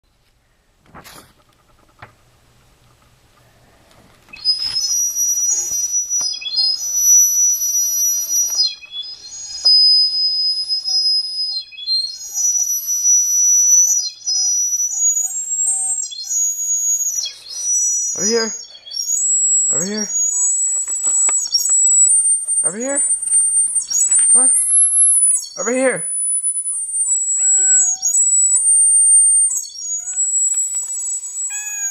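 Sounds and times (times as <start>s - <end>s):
shrill high whistle: 4.3s - 31.9s.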